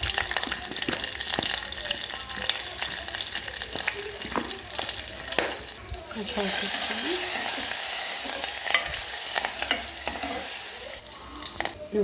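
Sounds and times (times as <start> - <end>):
hot oil sizzling: 0.0 - 12.0.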